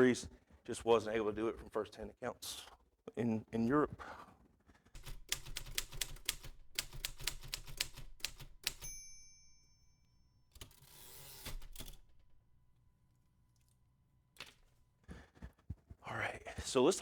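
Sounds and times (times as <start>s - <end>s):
typewriter keystrokes: 5.0s - 9.0s, 10.5s - 12.3s
typewriter carriage return: 5.0s - 9.2s, 10.5s - 12.3s
typewriter bell ringing: 8.2s - 12.2s.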